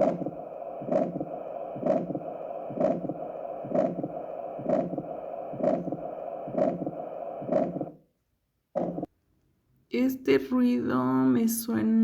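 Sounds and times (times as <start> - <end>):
heartbeat: 0.0 - 8.0, 8.8 - 9.1
steady hiss: 0.0 - 8.0.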